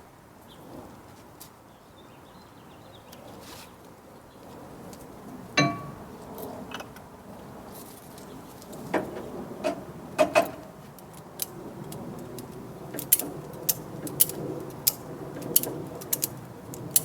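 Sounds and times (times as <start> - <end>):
metal hook clinking: 5.6 - 6.0.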